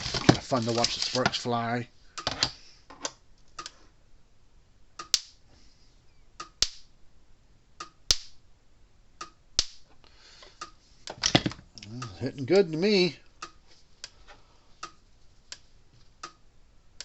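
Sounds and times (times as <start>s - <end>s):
electric fence spark snaps: 5.0s - 5.4s, 6.4s - 6.9s, 8.1s - 8.4s, 9.6s - 9.9s.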